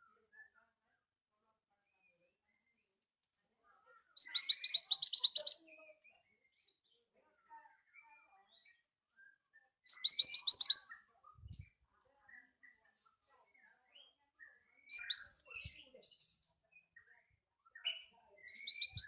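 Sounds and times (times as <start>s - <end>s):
bird singing high sharp notes: 4.2s - 5.6s, 9.9s - 10.8s, 14.9s - 15.3s, 18.5s - 19.0s.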